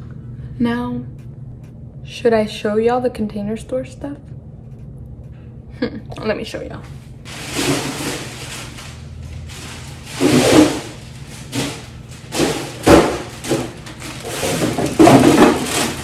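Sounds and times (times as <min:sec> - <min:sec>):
rustling of containers: 0:06.8 - 0:16.0
containers knocking: 0:07.3 - 0:16.0.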